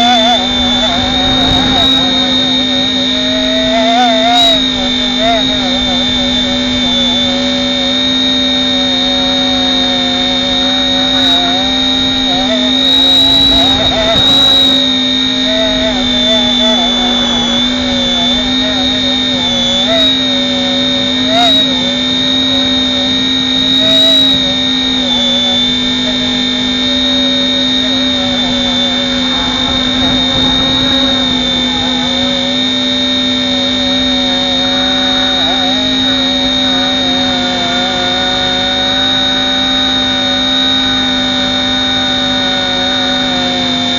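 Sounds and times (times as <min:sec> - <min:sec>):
wind gusts: 0:00.0 - 0:37.4
rc helicopter rotor whine: 0:00.0 - 0:43.9.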